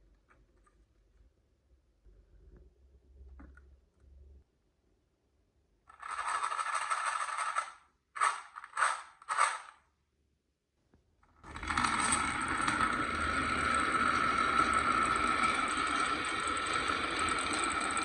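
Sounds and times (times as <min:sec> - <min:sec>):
marbles clattering: 0:05.9 - 0:09.7, 0:11.5 - 0:18.0
marbles rolling on wooden track: 0:05.9 - 0:09.7, 0:11.4 - 0:18.0.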